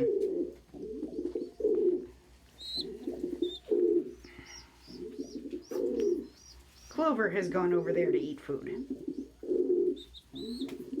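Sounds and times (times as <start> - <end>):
pigeons cooing: 0.0 - 11.0
faint high chirps: 2.6 - 7.0.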